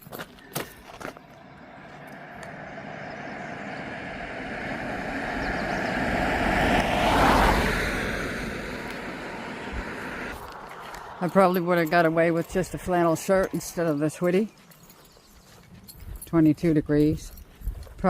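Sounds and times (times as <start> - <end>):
vehicle passing by: 1.0 - 15.4.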